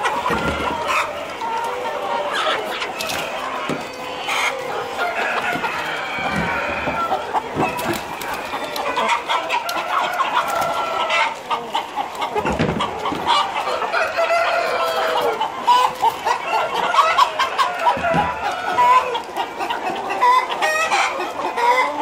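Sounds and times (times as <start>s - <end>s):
hens clucking: 0.0s - 22.0s
sharp clicks and knocks: 12.1s - 13.5s.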